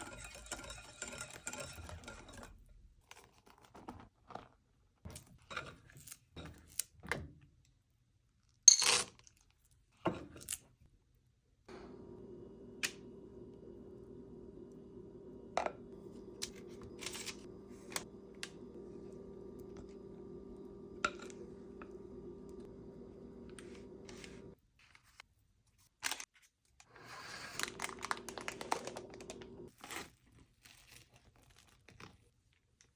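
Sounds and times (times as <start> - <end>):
utensils and dishes clattering: 0.0 - 2.6
steady low hum: 11.7 - 24.6.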